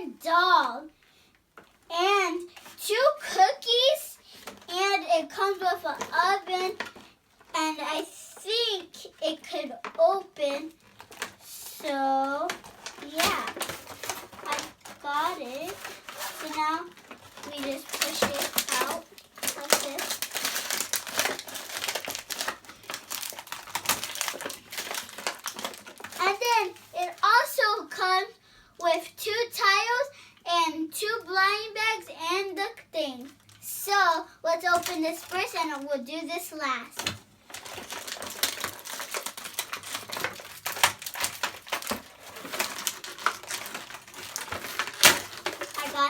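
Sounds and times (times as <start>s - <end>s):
packaging crinkling: 4.2s - 27.4s, 34.7s - 35.9s, 36.9s - 46.0s.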